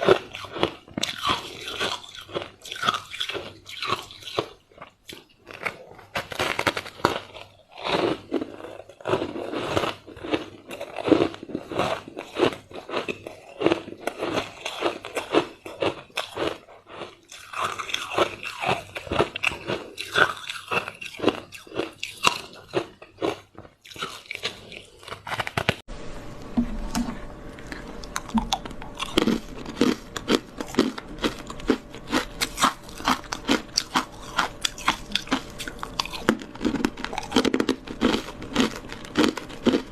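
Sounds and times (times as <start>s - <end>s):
ice being bitten and chewed: 0.0s - 25.8s, 26.8s - 39.9s
steady hum: 25.9s - 39.9s.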